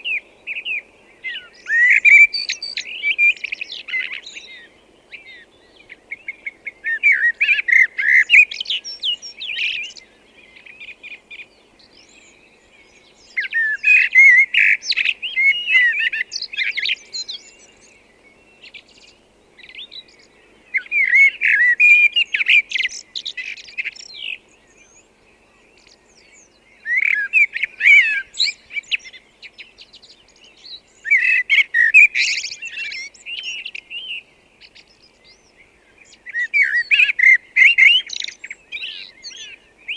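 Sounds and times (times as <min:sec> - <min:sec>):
blackbird singing: 0:00.0 - 0:39.9
faint background hiss: 0:00.0 - 0:39.9.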